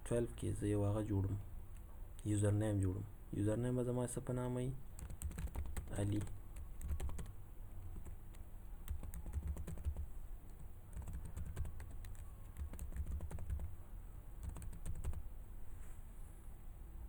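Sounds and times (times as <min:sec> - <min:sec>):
computer keyboard typing: 0:04.9 - 0:13.8, 0:14.4 - 0:15.3.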